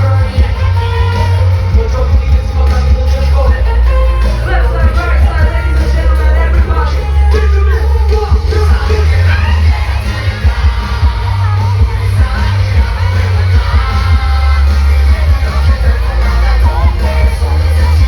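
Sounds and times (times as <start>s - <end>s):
crowd yelling: 0.0s - 18.0s
live pop music with heavy bass: 0.0s - 18.0s
person singing: 0.0s - 18.0s.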